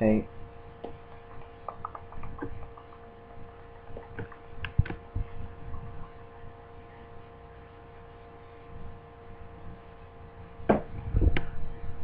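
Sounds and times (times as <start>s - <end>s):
electrical hum: 0.0s - 12.0s.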